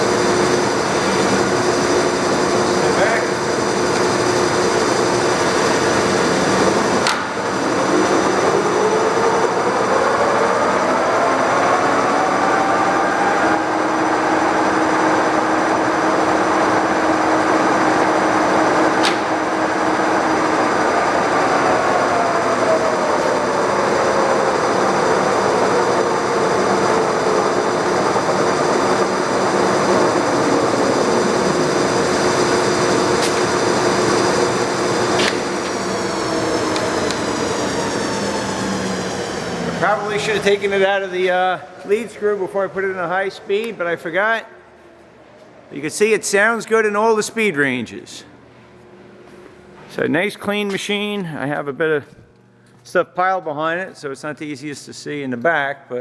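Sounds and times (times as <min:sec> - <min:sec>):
lathe gears whining: 0:00.0 - 0:43.6.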